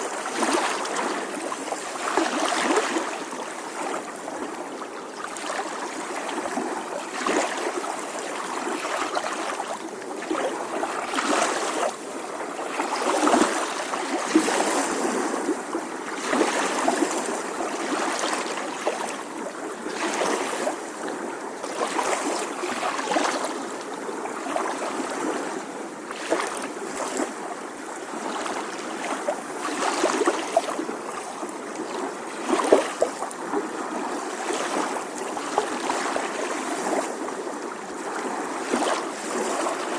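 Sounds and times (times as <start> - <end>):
small waves lapping on shore: 0.0 - 39.9.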